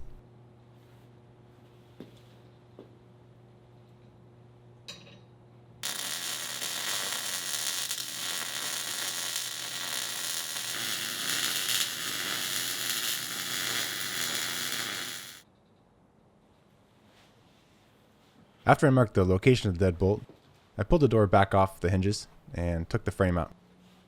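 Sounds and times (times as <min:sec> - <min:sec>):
welding arc crackling: 0:00.0 - 0:00.2, 0:05.8 - 0:15.4.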